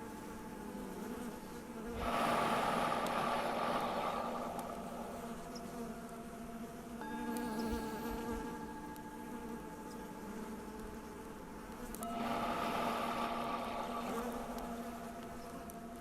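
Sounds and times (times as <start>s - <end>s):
bees buzzing: 0.0s - 16.0s
singing bowl ringing: 4.2s - 16.0s.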